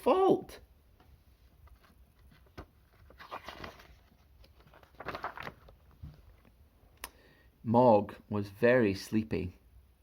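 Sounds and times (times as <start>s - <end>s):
paper rustling: 1.4s - 6.6s.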